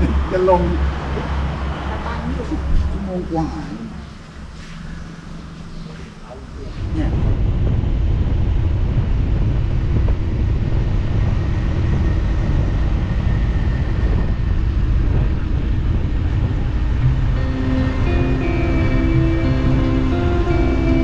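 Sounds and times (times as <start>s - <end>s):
motorcycle engine and road rumble: 0.0s - 21.0s
wind buffeting microphone: 5.5s - 21.0s
music: 17.0s - 21.0s.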